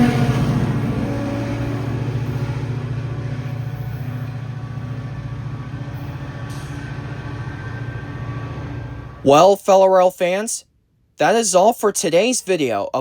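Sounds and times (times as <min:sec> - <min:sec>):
diesel locomotive drone: 0:00.0 - 0:09.9.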